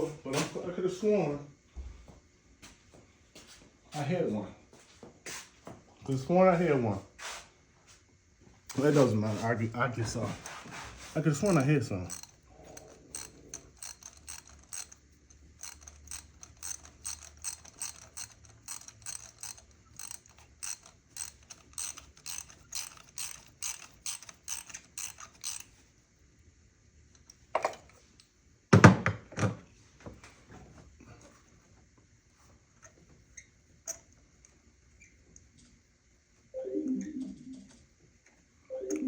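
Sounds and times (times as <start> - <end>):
ratchet wrench clicking: 8.7 - 9.0, 10.1 - 25.8.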